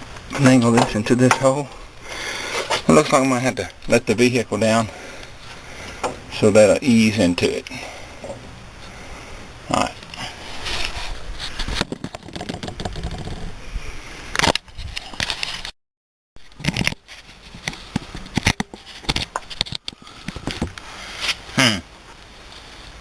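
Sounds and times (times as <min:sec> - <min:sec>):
metal clunks and scrapes: 0:02.4 - 0:03.0.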